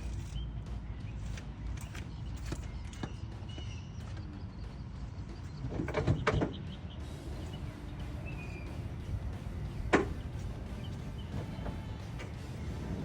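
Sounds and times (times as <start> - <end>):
low outdoor rumble: 0.0 - 13.0
clunks and knocks: 5.6 - 6.6, 9.9 - 10.3.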